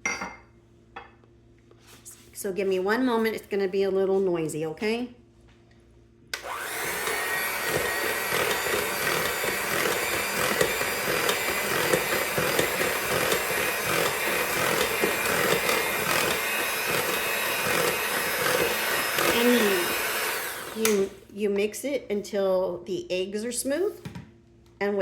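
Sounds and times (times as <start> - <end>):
beaters churning mixture: 6.4 - 21.1
electric hand mixer whine: 6.4 - 21.2.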